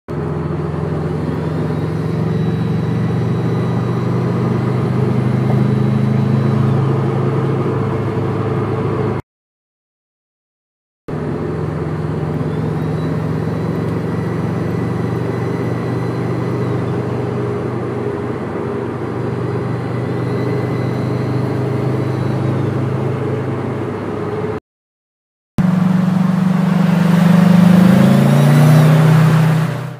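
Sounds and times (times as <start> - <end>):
car engine hum: 0.1 - 9.2, 11.1 - 24.6, 25.6 - 29.9
turbo whistle: 1.1 - 6.8, 12.4 - 17.3, 19.5 - 22.8.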